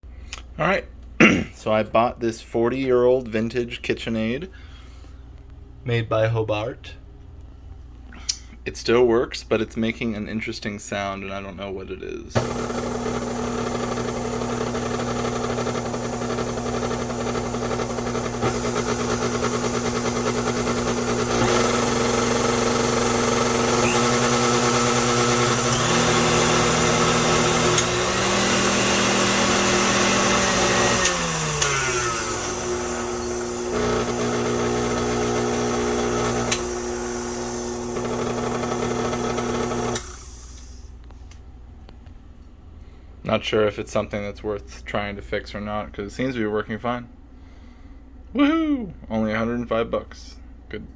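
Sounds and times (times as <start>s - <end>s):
stand mixer motor humming: 12.4s - 40.7s.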